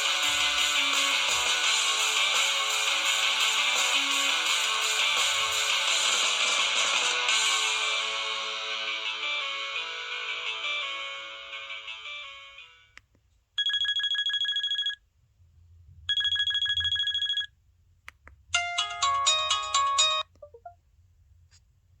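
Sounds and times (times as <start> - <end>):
musical ringtone: 0.0 - 12.9, 18.6 - 20.8.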